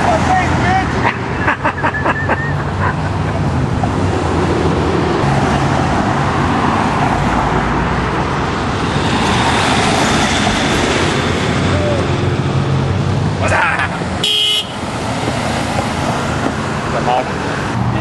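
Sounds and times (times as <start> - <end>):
road traffic: 0.0 - 18.0.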